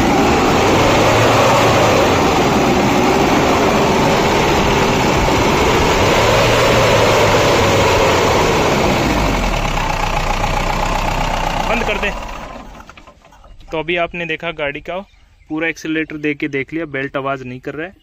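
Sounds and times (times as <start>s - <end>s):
diesel engine revving: 0.0s - 13.1s.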